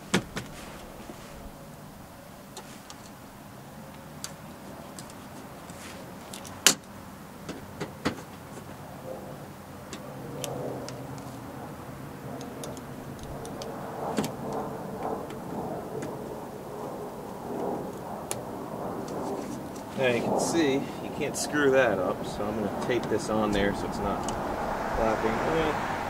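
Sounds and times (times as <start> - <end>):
steady low hum: 8.4 - 26.0.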